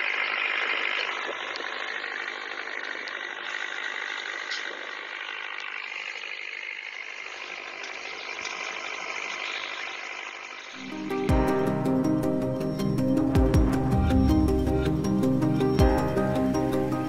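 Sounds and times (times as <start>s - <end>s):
toy steam boat putting: 0.0s - 10.9s.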